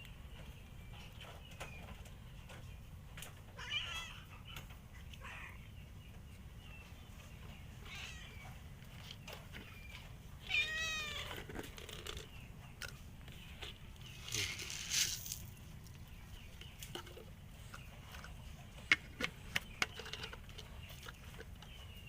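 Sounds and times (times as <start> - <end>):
cats meowing: 3.5 - 5.7, 7.8 - 8.7, 9.7 - 11.6.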